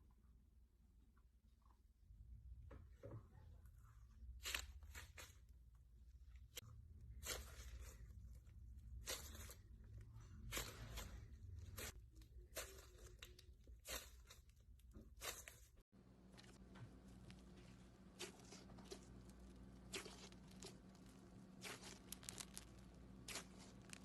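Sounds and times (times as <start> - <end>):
slime crackling and popping: 18.2 - 24.0.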